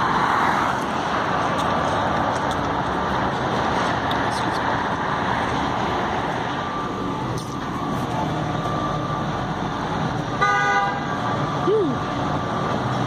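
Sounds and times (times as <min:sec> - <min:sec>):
street traffic: 0:00.0 - 0:13.0
horn honk: 0:10.4 - 0:11.1.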